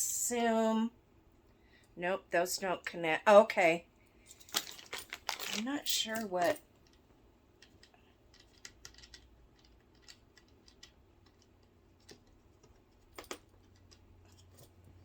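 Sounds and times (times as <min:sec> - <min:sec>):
plastic parts clicking and tapping: 0:07.6 - 0:14.7.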